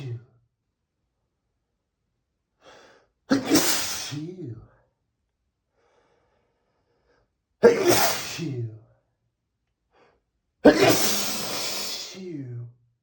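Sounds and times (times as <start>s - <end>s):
person sneezing loudly: 3.3s - 4.6s, 7.6s - 8.7s, 10.6s - 12.4s.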